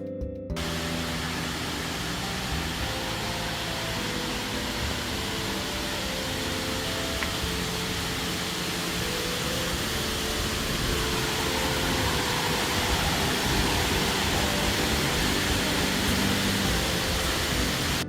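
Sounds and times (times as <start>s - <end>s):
soft background music: 0.0s - 18.0s
waterfall roaring: 0.6s - 18.0s.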